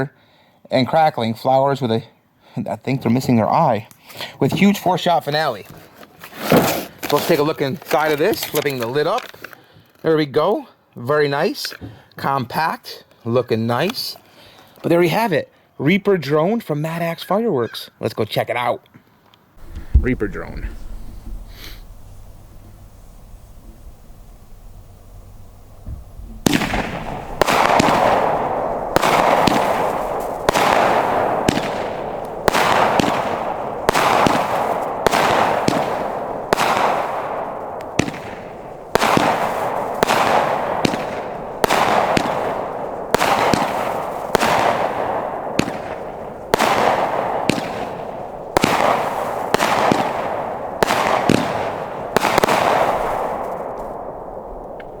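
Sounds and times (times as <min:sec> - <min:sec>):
firework shots bursting: 0:19.6 - 0:55.0.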